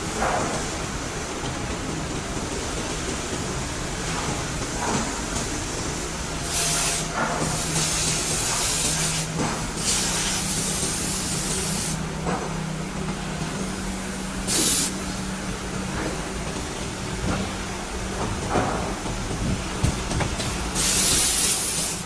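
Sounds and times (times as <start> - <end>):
compressed air hissing: 6.4 - 12.1, 13.6 - 15.5, 20.7 - 22.0.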